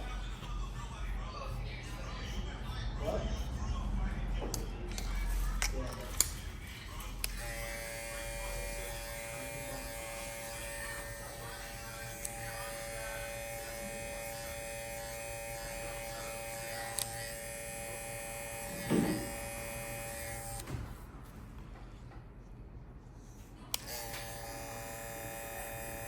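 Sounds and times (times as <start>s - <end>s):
electric hair clipper buzzing: 7.2s - 20.7s, 23.7s - 26.0s
thump: 18.9s - 19.2s.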